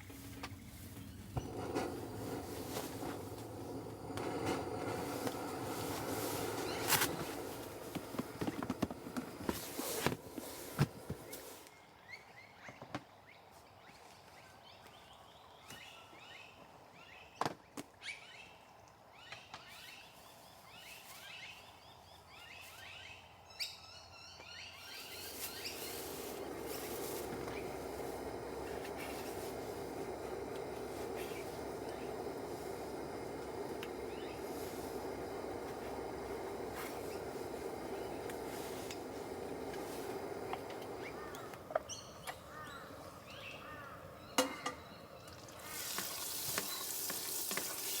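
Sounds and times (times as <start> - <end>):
steady rushing noise: 0.0 - 11.3, 25.1 - 44.3
small birds chirping: 0.0 - 13.5, 19.2 - 48.0.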